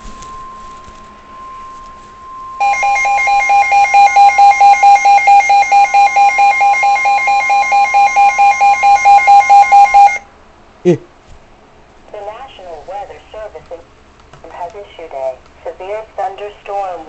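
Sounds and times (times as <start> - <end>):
loud pulsing alarm beep: 0.0 - 10.3
steady alarm tone: 0.0 - 10.3.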